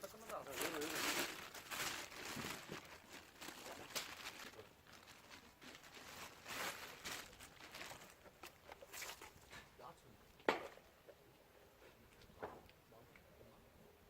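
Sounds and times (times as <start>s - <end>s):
crinkling and rustling: 0.0s - 9.9s.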